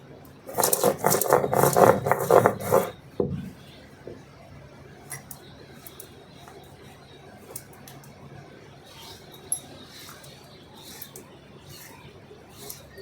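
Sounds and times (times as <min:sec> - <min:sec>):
utensils scraping and clattering: 0:00.5 - 0:03.0.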